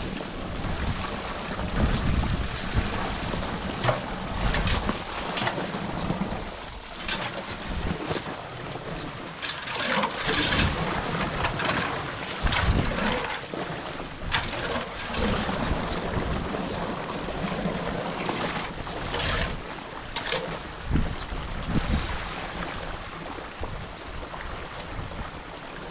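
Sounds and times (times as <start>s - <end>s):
floodwater rushing into a drain: 9.5s - 16.5s.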